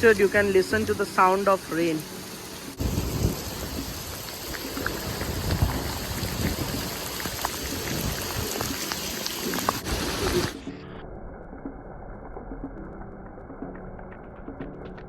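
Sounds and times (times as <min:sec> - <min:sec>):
drips and splashes: 0:00.0 - 0:10.7
heavy rain falling: 0:00.0 - 0:10.7.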